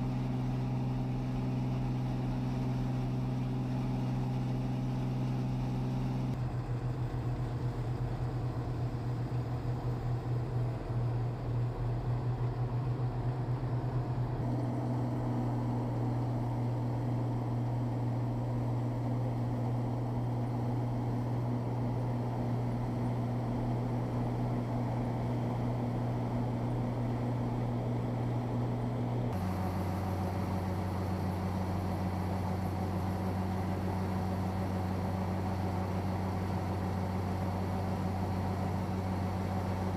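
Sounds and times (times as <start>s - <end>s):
engine-driven machine droning: 0.0s - 39.9s.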